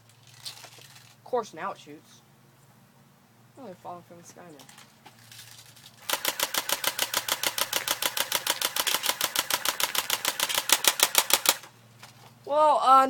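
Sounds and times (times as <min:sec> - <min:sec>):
airsoft gun firing full auto: 0:06.0 - 0:11.8.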